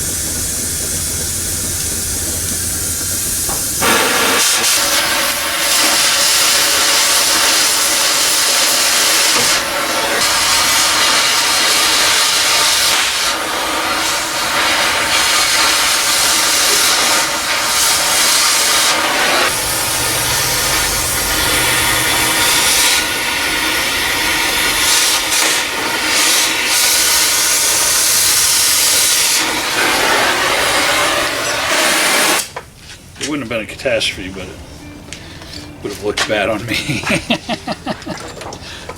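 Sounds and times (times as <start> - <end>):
gas torch hissing: 0.0 - 32.6
low rumble: 19.5 - 25.4.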